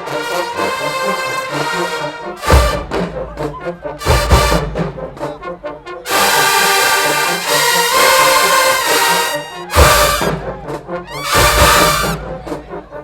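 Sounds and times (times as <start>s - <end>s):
marching band brass playing: 0.0s - 13.0s
heavy percussion hits: 9.6s - 10.5s, 11.1s - 12.5s.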